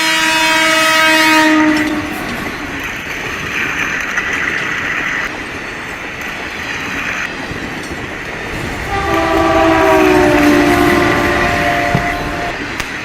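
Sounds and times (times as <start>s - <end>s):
train horn blast: 0.0s - 2.3s, 8.8s - 12.6s
train running on rails: 0.0s - 13.0s.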